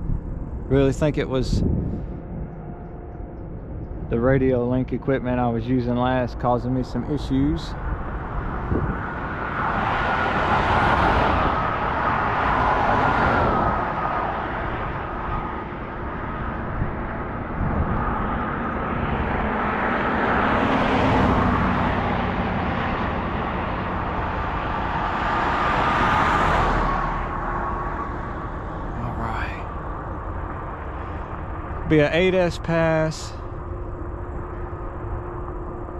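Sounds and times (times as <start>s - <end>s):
road vehicle hiss and hum: 0.0s - 35.9s.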